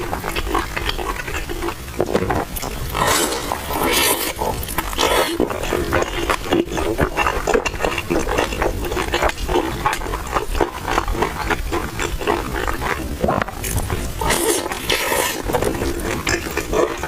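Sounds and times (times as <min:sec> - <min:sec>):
close chewing and mouth noises: 0:00.0 - 0:17.0.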